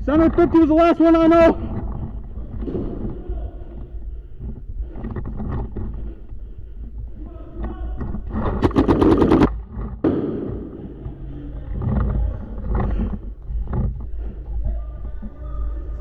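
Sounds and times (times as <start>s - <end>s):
paintball marker firing rapidly: 8.4s - 11.3s.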